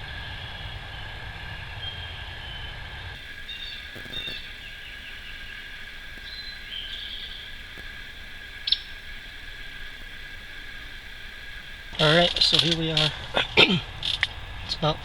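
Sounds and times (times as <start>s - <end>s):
songbird chirps: 1.8s - 13.2s.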